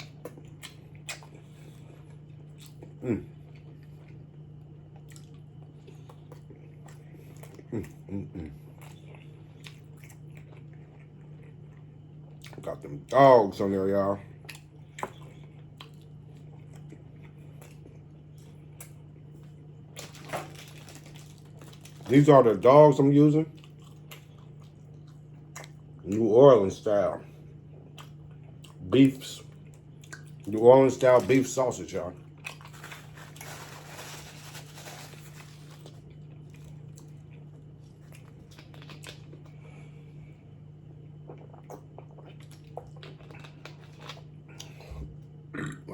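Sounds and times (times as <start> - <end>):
chewing and wet mouth clicks: 0.0 - 1.4, 14.4 - 19.0, 23.6 - 26.2, 27.8 - 28.8, 29.5 - 30.6, 38.1 - 39.5
steady low hum: 0.0 - 45.9
small squishy sounds: 14.4 - 22.6, 27.9 - 39.8.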